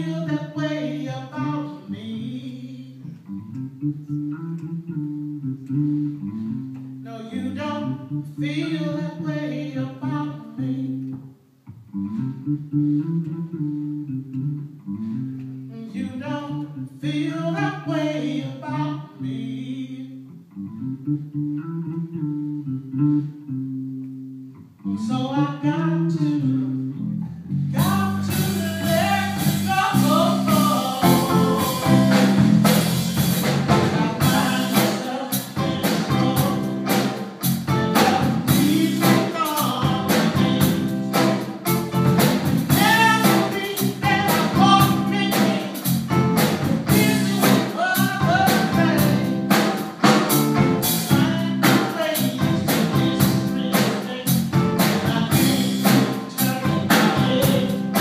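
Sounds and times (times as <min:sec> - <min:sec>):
person singing: 0:00.0 - 0:03.3, 0:07.0 - 0:11.2, 0:15.7 - 0:20.4, 0:25.0 - 0:26.6, 0:27.7 - 0:58.0
bass guitar: 0:00.0 - 0:58.0
electric guitar: 0:00.0 - 0:58.0
drum kit: 0:27.7 - 0:58.0.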